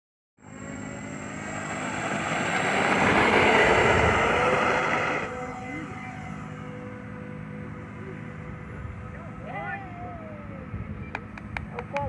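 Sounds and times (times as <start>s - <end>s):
model airplane motors roaring: 0.4s - 9.6s.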